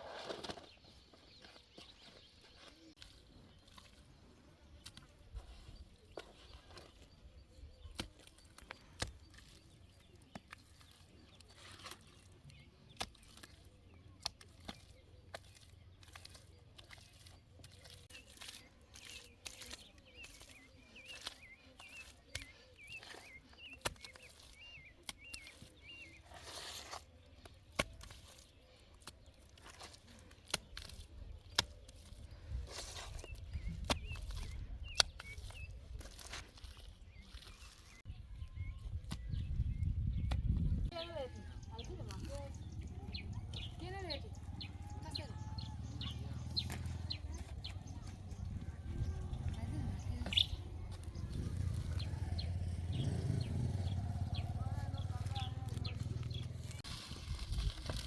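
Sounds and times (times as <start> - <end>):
bird chirping: 37.1 - 56.8.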